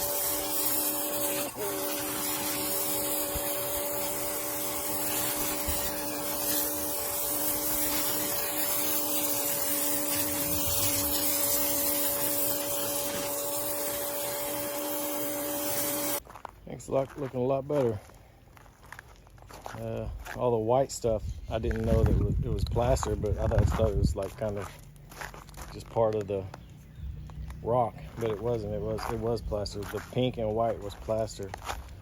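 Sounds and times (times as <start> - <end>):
pressure washer motor humming: 0.0 - 16.2
water jet hissing: 0.0 - 16.2.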